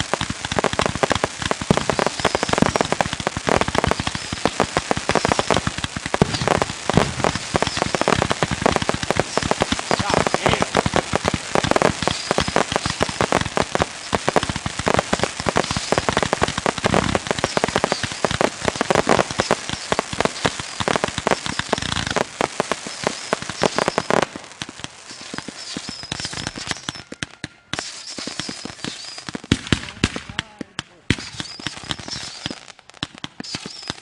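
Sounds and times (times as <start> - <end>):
crackling fireworks: 0.0 - 34.0.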